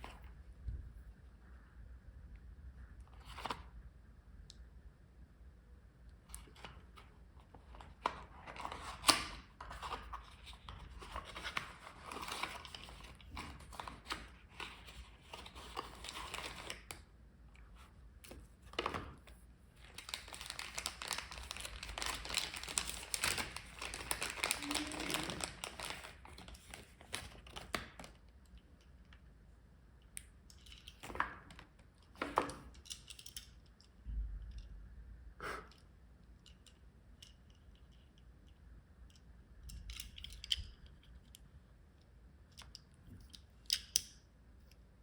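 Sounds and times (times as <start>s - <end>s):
packaging crinkling and tearing: 7.9s - 17.0s, 19.8s - 28.2s.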